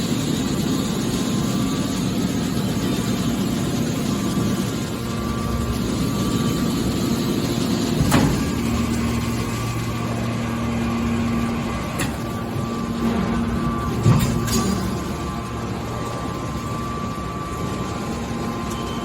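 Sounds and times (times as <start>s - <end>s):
baler pump motor hum: 0.0s - 19.0s.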